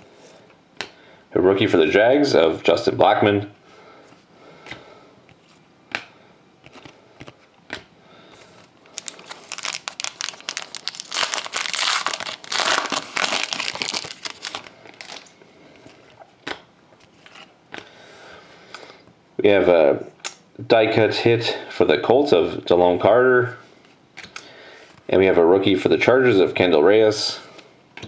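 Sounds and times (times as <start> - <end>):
foil wrapper crinkling: 8.9 - 15.4.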